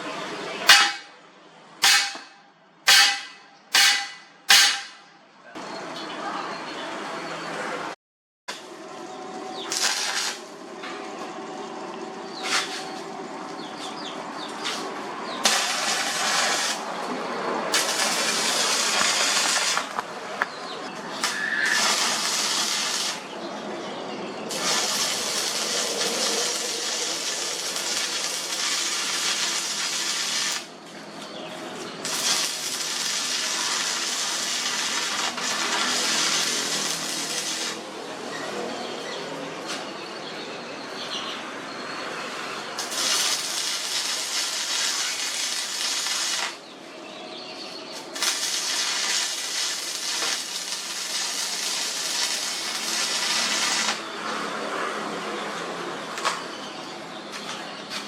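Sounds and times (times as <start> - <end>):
arc welding crackling hiss: 9.7 - 10.5, 14.6 - 17.0, 17.7 - 20.1, 21.0 - 23.3, 24.5 - 30.8, 32.0 - 38.0, 42.8 - 46.7, 47.9 - 54.2.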